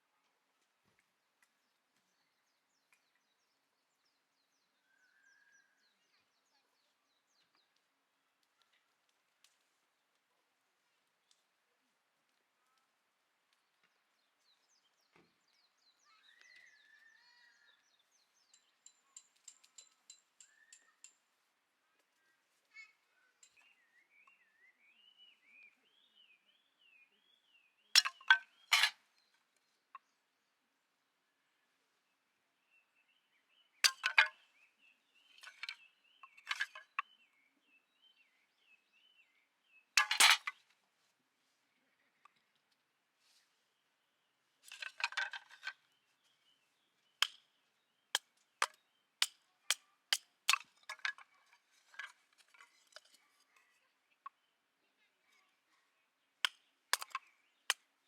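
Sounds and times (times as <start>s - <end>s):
faint birdsong chirps: 0.0s - 58.0s
metal cookware clattering: 28.0s - 28.9s, 40.0s - 40.5s.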